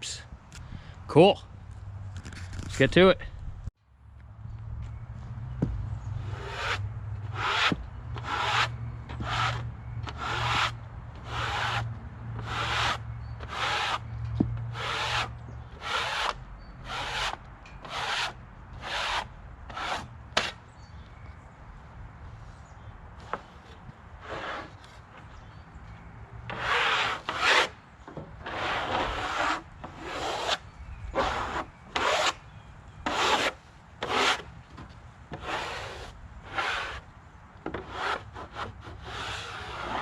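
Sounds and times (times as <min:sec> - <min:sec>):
rasping strokes on wood: 0:06.2 - 0:14.1, 0:14.7 - 0:20.6, 0:26.5 - 0:27.7, 0:28.4 - 0:30.6, 0:31.2 - 0:32.4, 0:33.0 - 0:34.5, 0:35.4 - 0:37.0, 0:37.7 - 0:40.0.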